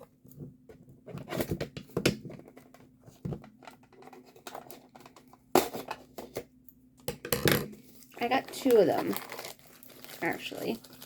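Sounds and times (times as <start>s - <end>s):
packaging crinkling and tearing: 7.9s - 11.0s.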